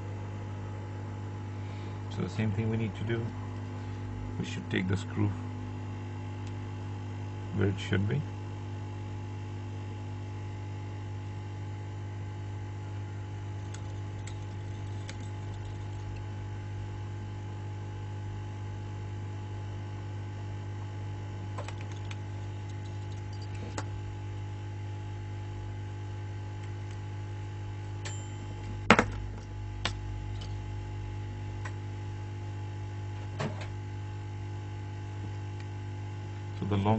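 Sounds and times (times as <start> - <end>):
electrical mains hum: 0.0 - 36.9
small tools clicking on metal: 13.6 - 16.2.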